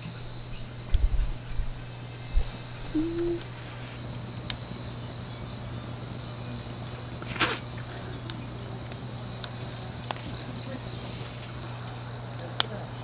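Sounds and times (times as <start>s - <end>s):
low steady hum: 0.0s - 3.9s
crickets chirping: 0.0s - 13.0s.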